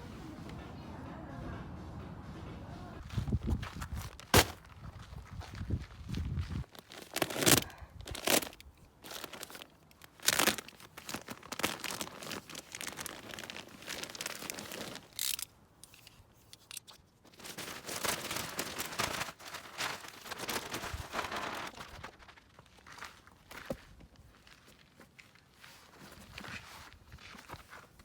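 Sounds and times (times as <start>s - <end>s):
crinkly wrapping rustling: 3.2s - 23.5s.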